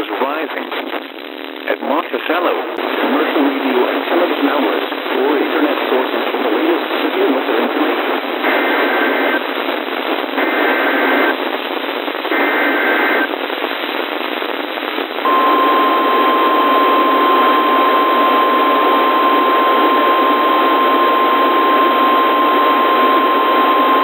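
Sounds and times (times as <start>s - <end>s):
radio hiss: 0.0s - 24.0s
steady alarm tone: 15.2s - 24.0s.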